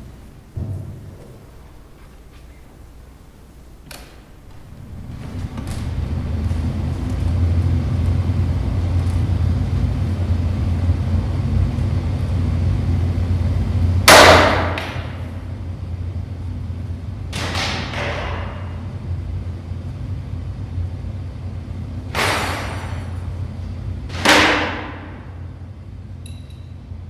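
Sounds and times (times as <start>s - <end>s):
low rumble: 4.7s - 14.2s.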